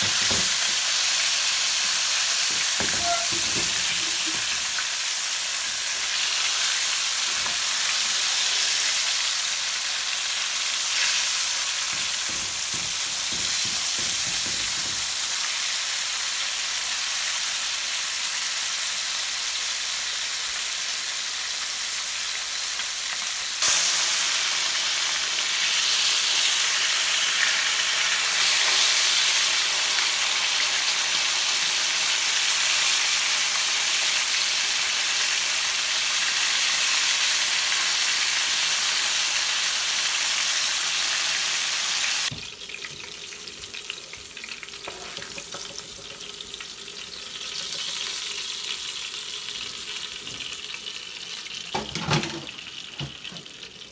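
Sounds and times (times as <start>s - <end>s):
food sizzling in a pan: 0.0s - 53.9s
soft stirring knocks: 2.5s - 4.7s.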